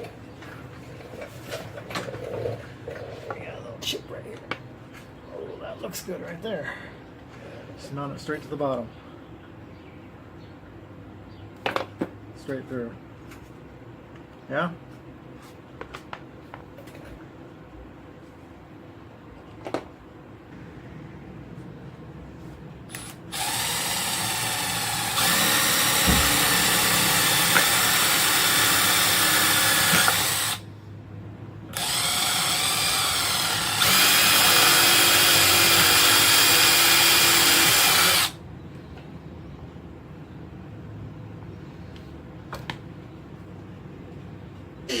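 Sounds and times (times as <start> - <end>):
power drill drilling: 22.9 - 30.6, 31.7 - 38.4.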